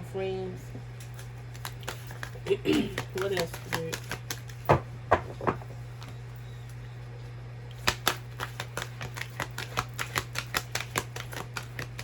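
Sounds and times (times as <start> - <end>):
steady low hum: 0.0 - 12.0
cards being shuffled: 1.0 - 4.8, 7.8 - 12.0.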